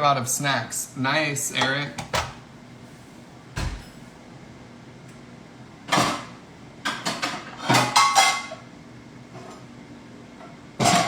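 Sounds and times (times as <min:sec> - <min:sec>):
pots and pans clanking: 0:06.9 - 0:08.6, 0:10.8 - 0:11.0.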